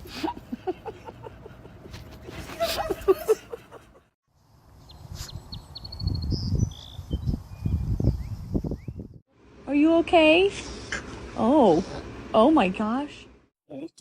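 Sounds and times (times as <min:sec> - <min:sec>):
birds chirping: 0:04.8 - 0:09.2.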